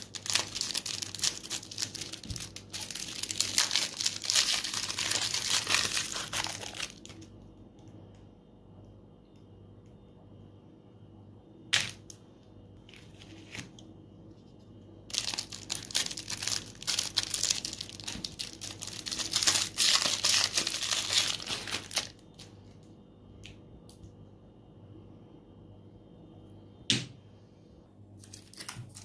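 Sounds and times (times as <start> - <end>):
dense crinkling and crackling: 0.0 - 7.4, 12.8 - 22.8, 28.2 - 29.0.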